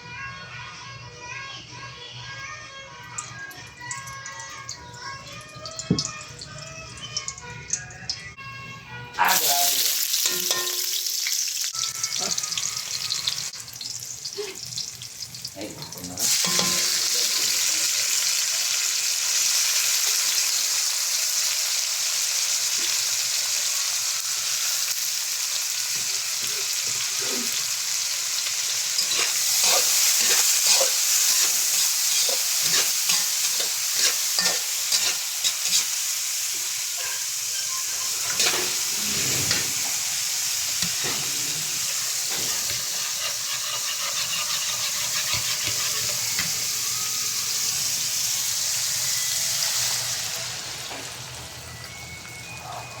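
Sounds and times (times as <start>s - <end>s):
food sizzling in a pan: 9.2s - 53.0s
utensil scraping a pan: 29.0s - 35.9s, 37.0s - 40.0s, 40.8s - 46.5s.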